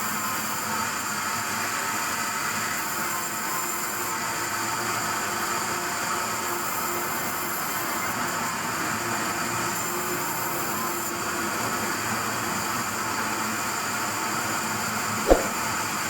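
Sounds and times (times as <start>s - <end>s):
sharp knock: 15.3s - 15.6s.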